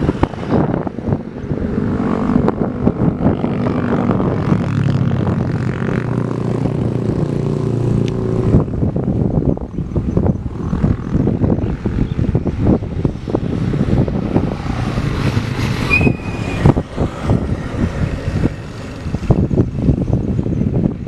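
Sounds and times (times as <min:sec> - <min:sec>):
vehicle rumble: 0:00.0 - 0:21.0
high whistle-like tone: 0:15.9 - 0:16.8.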